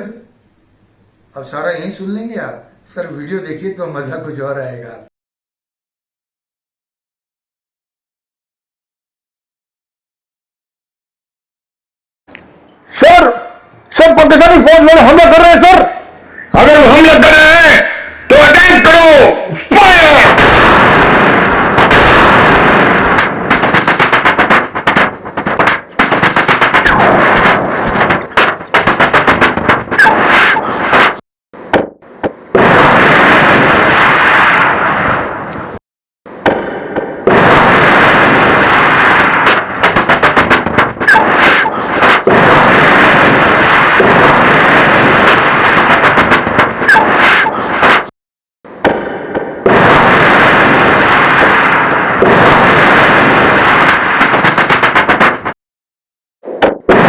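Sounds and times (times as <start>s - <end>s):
mouth imitating machine-gun fire: 14.0s - 31.2s, 36.5s - 48.1s, 48.9s - 55.6s.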